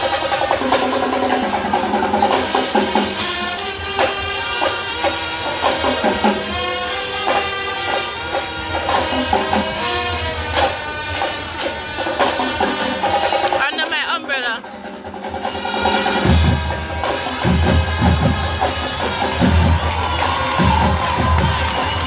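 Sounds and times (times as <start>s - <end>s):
wind instruments holding notes: 0.0s - 14.2s, 15.3s - 22.0s
marching band drums: 0.0s - 22.0s.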